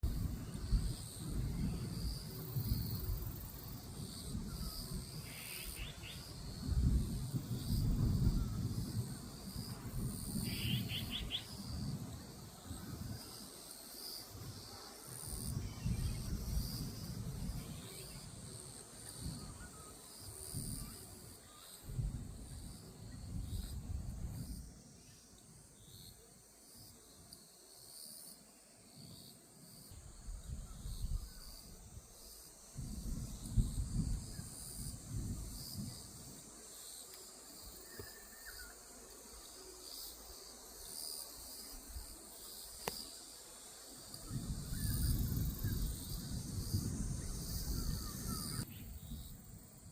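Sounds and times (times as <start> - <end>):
wind buffeting microphone: 0.0 - 13.5, 14.3 - 24.8, 30.0 - 36.5, 44.2 - 49.9
insects trilling: 0.0 - 49.9.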